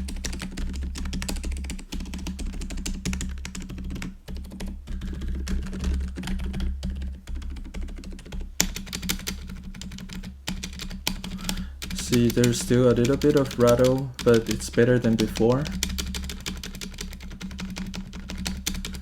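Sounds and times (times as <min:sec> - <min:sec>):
soft keyboard clicks: 0:00.0 - 0:19.0
low steady hum: 0:09.4 - 0:16.7.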